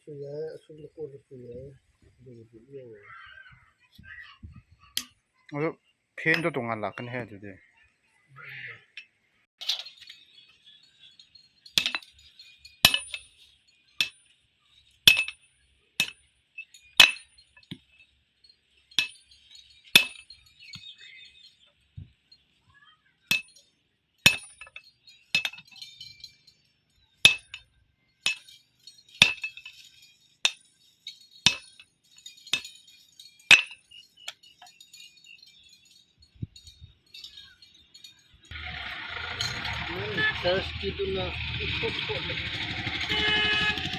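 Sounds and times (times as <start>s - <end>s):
hammer striking metal: 15.1s - 15.4s, 20.0s - 20.3s, 23.3s - 23.6s, 24.3s - 24.8s, 27.3s - 27.6s, 28.2s - 28.6s, 29.2s - 29.8s, 31.4s - 31.8s, 33.5s - 33.9s.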